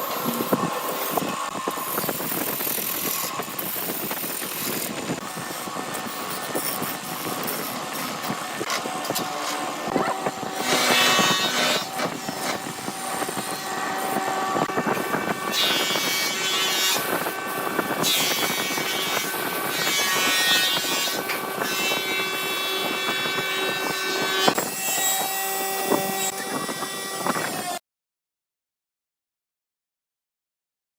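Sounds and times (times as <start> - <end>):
wood lathe humming: 0.0 - 17.5
turning tool cutting wood: 0.0 - 27.6.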